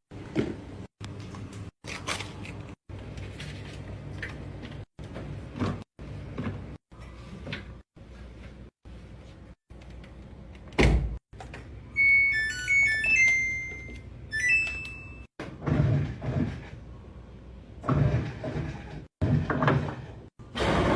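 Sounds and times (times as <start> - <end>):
electronic beep tune: 12.0 - 15.2
washing machine rushing noise: 15.4 - 17.0, 17.7 - 20.9.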